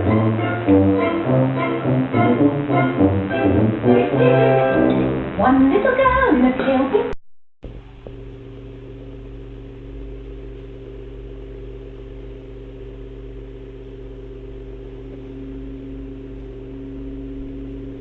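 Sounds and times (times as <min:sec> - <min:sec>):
low drone of held tones: 0:07.7 - 0:18.0.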